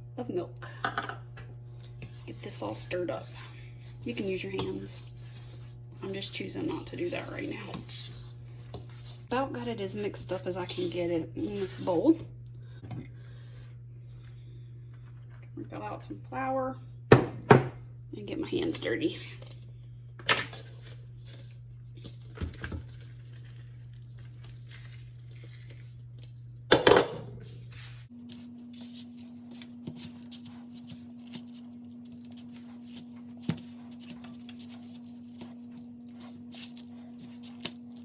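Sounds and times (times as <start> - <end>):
hands kneading dough: 2.0 - 12.2, 27.6 - 38.0.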